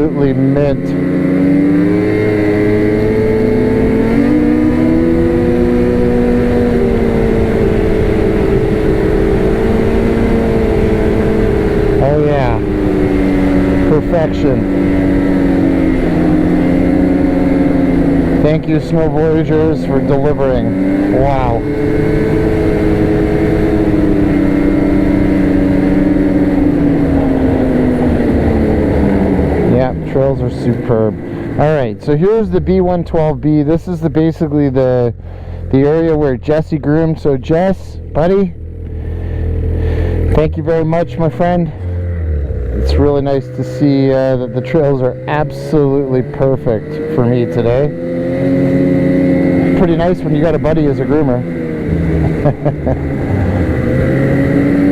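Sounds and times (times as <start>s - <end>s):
snowmobile engine running: 0.0s - 54.9s.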